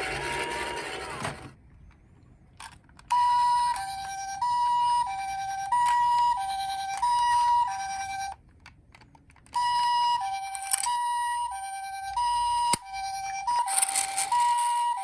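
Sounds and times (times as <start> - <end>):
electronic two-tone siren: 9.6 - 15.0.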